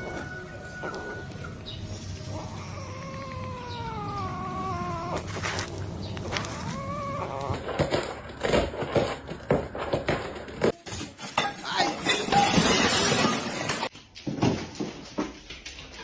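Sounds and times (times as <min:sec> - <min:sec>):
cat yowling: 0:02.2 - 0:08.0, 0:11.6 - 0:12.1.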